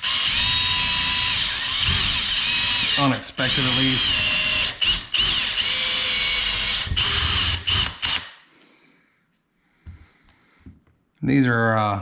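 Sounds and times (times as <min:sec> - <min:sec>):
power drill boring into wall: 0:00.0 - 0:08.4.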